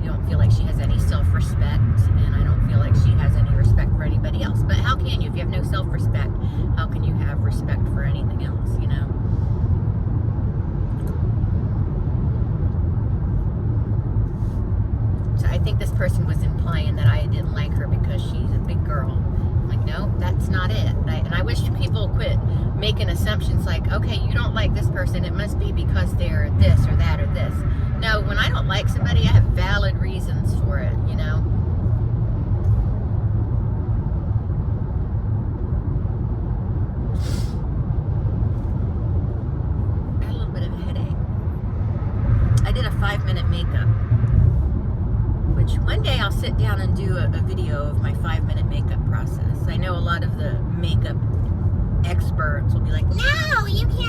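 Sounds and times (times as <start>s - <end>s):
car cabin road and engine noise: 0.0s - 54.0s
brief hiss: 37.2s - 37.6s.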